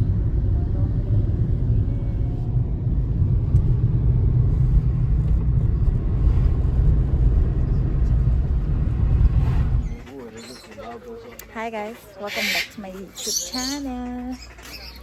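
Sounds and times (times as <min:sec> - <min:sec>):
car road rumble: 0:00.0 - 0:10.3.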